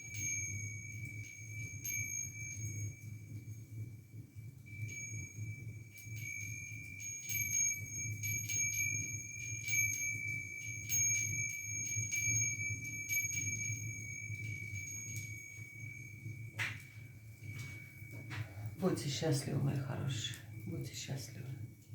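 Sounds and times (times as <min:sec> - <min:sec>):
high ringing tone: 0:04.6 - 0:18.8.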